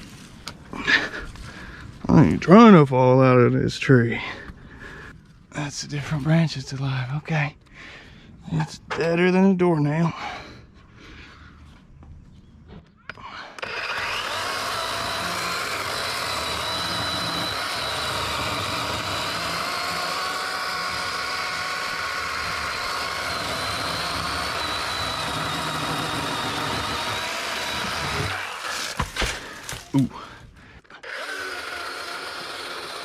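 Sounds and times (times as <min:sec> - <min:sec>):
battery chainsaw cutting branch: 0:13.5 - 0:30.3, 0:30.9 - 0:33.0.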